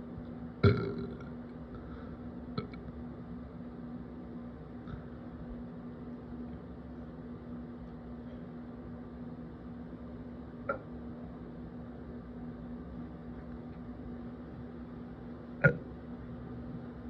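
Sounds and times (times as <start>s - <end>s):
steady low hum: 0.0s - 17.0s
person burping: 0.6s - 1.2s, 2.6s - 2.8s, 15.6s - 15.8s.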